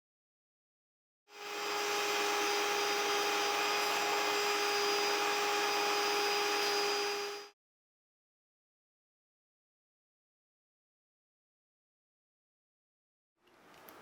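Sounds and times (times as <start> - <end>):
small motor tool whining: 1.3 - 7.6.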